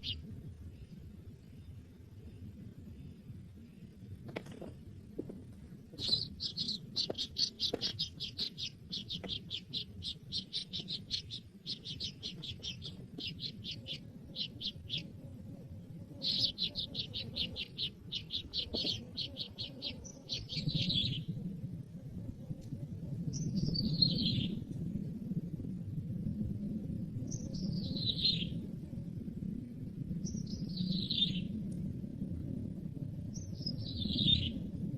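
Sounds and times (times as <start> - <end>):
bird chirping rapidly: 0.0 - 0.2, 6.0 - 15.1, 16.1 - 21.2.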